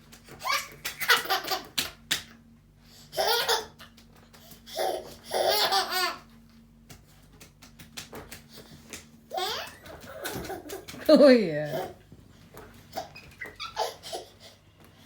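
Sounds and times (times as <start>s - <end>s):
baby laughing: 0.4s - 1.9s, 3.1s - 4.0s, 4.7s - 6.2s, 9.3s - 12.0s, 12.9s - 14.6s.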